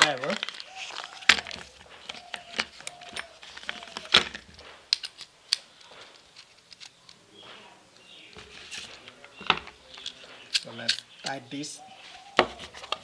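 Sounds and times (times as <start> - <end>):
clicks and clinks of small tools: 10.0 - 11.4.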